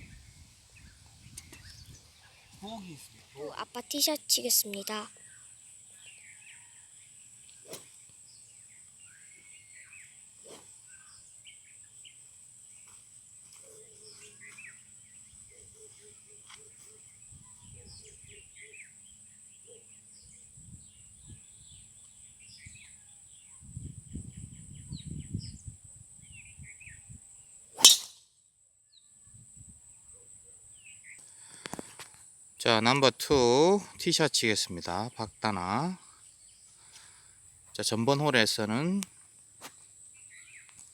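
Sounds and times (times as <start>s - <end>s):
wind rumbling on microphone: 0.0s - 2.7s, 20.5s - 21.9s, 23.6s - 27.2s
birds chirping: 0.0s - 23.4s, 27.8s - 28.1s
golf driver striking ball: 27.8s - 28.2s.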